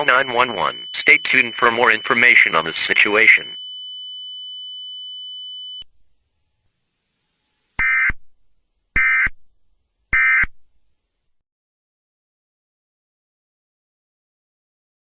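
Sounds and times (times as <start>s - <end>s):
digital data bursts: 0.0s - 3.5s
steady high tone: 0.0s - 3.6s.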